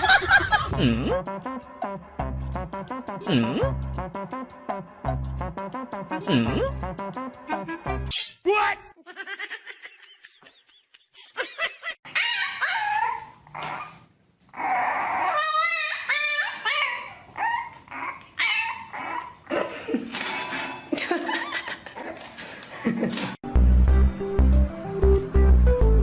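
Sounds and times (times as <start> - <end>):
dog whining and yipping: 12.1 - 19.4.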